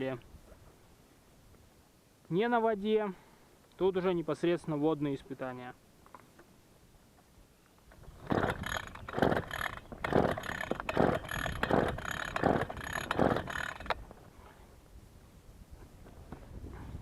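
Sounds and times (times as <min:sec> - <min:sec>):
engine cranking: 0:08.0 - 0:14.0
recoil starter pulls ratcheting whir: 0:08.0 - 0:14.0.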